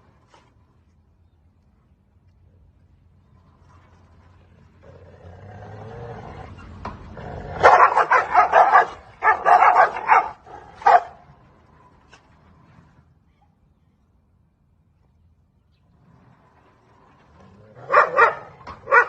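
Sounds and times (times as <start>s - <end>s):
dog growling low: 4.7s - 7.6s, 16.9s - 18.6s
dog barking angrily: 7.4s - 11.2s, 17.7s - 19.0s.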